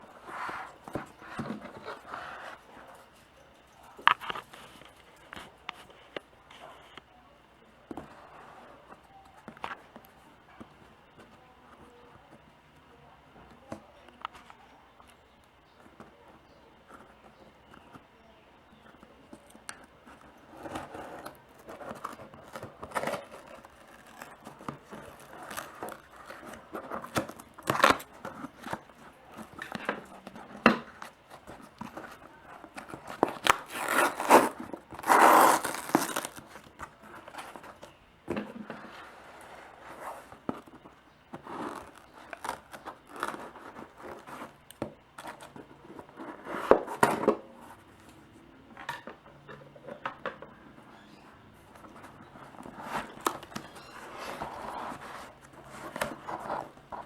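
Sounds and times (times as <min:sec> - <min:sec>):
packaging crinkling and tearing: 0:20.6 - 0:29.8, 0:32.0 - 0:37.9, 0:41.4 - 0:44.5
loud ripping: 0:33.2 - 0:36.6.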